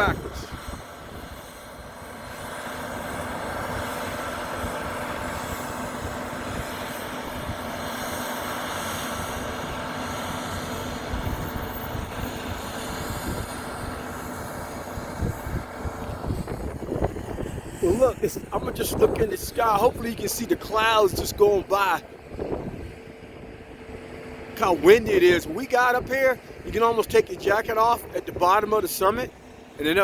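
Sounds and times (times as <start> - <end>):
train mechanical hum and rumble: 0.0 - 30.0.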